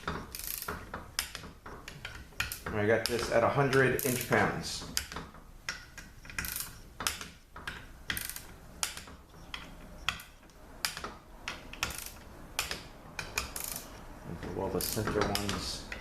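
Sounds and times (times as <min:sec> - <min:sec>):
torque wrench clicks: 0:00.1 - 0:03.2, 0:08.1 - 0:14.0, 0:14.8 - 0:16.0.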